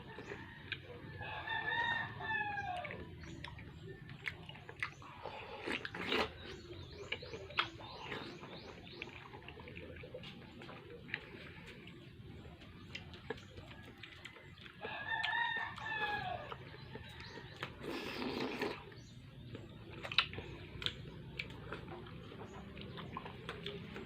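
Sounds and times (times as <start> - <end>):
rooster crowing: 1.2 - 2.9, 14.8 - 16.6.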